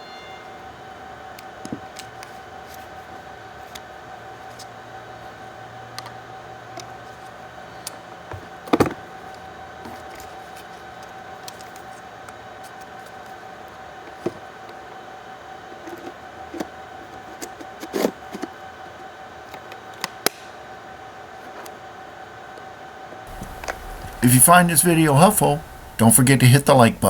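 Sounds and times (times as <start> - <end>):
steady high hum: 23.3 - 27.0.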